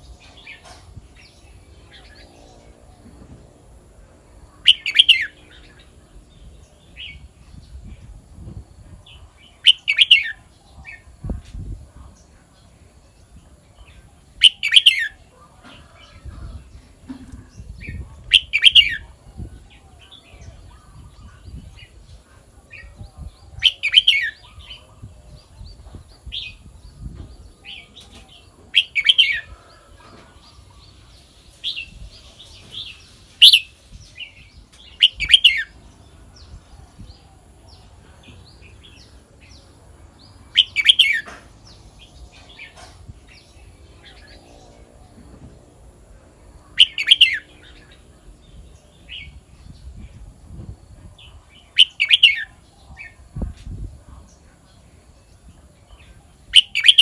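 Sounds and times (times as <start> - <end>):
bird song phrases: 0.0 - 57.0.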